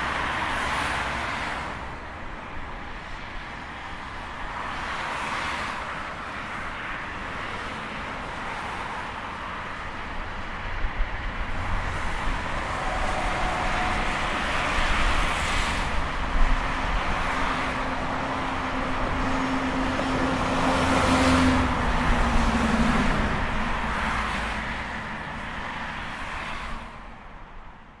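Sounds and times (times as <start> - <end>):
highway traffic rushing: 0.0 - 28.0
vehicle engine hum passing: 11.2 - 25.5.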